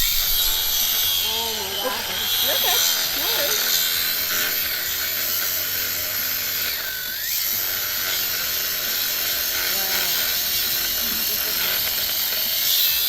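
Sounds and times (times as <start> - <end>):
power tool grinding metal: 0.0 - 13.0.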